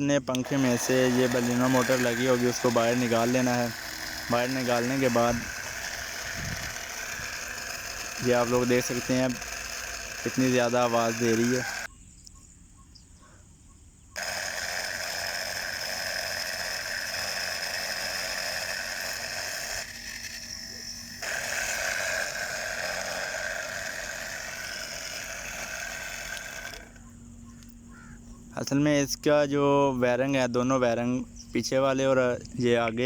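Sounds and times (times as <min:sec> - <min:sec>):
electric motor whirring and rasping: 0:00.3 - 0:11.9, 0:14.2 - 0:27.3.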